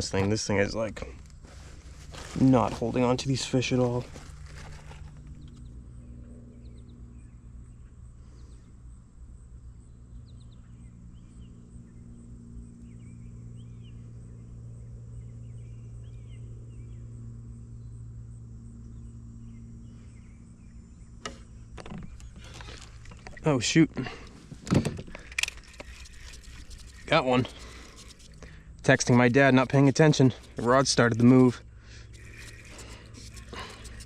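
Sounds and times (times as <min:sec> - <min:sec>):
steady low hum: 0:00.0 - 0:34.0
small birds chirping: 0:09.6 - 0:18.0, 0:18.8 - 0:34.0.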